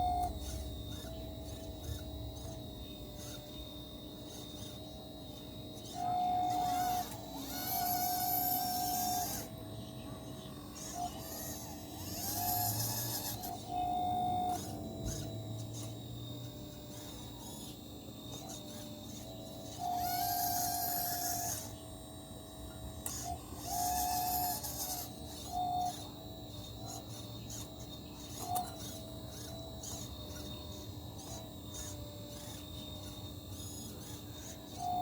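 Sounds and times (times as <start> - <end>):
constant low hum: 0.0 - 35.0
small electric motors whining: 0.0 - 35.0.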